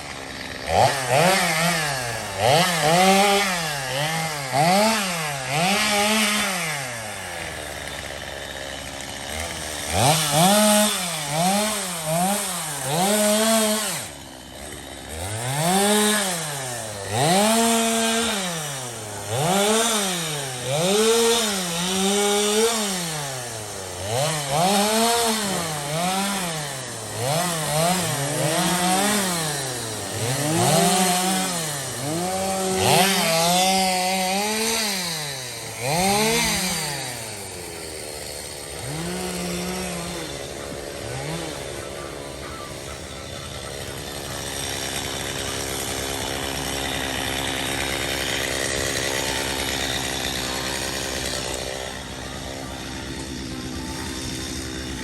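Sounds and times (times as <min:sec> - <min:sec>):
chainsaw cutting wood: 0:00.0 - 0:55.0.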